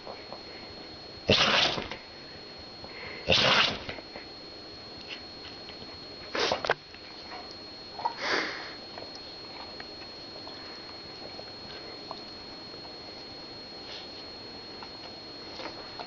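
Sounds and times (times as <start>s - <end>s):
dog sneezing: 1.3s - 1.9s, 3.3s - 4.0s.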